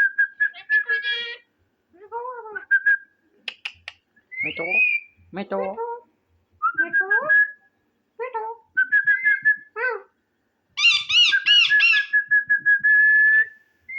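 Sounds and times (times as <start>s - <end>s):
parrot whistling and chattering: 0.2s - 1.5s, 3.5s - 5.2s, 10.8s - 12.3s.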